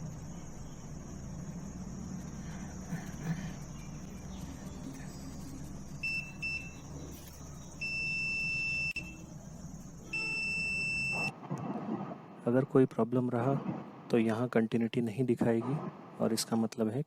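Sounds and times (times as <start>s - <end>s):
multimeter continuity beeps: 6.0s - 6.9s, 7.8s - 9.2s, 10.1s - 11.3s.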